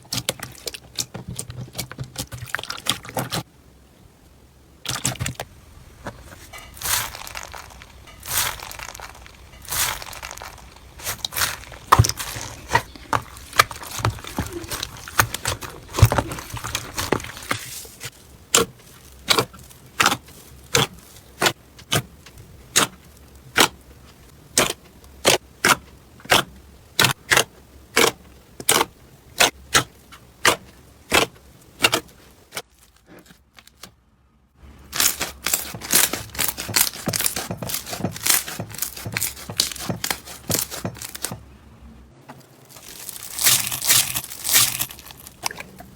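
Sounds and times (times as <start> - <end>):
slime crackling and squishing: 0.0 - 3.5, 4.8 - 33.9, 34.8 - 41.4, 42.4 - 45.9
slime popping: 6.7 - 17.7, 42.7 - 45.8.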